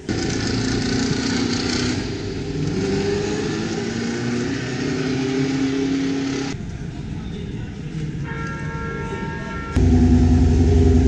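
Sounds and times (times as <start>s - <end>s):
racing car engine at high revs: 0.0s - 6.6s, 9.8s - 11.0s.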